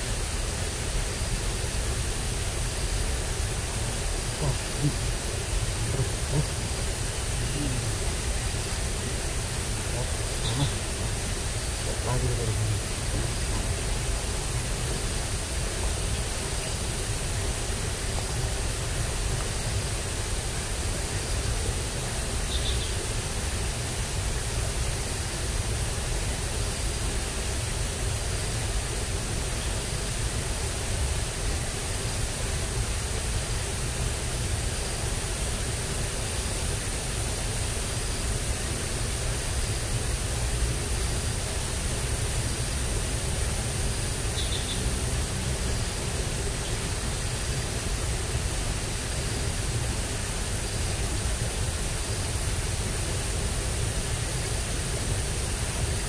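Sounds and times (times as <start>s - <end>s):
faint high hiss: 0.0s - 56.0s
water rushing in a ditch: 0.0s - 56.0s
faint chirps: 4.2s - 14.0s, 22.4s - 23.0s, 44.2s - 44.9s.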